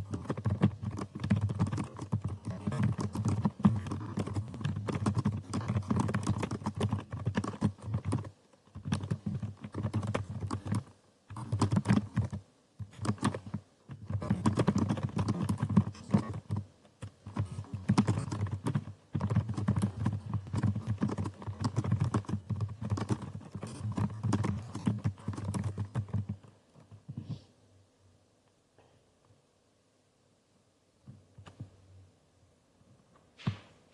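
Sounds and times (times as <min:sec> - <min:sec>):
fast typing on keyboard: 0:00.0 - 0:26.5.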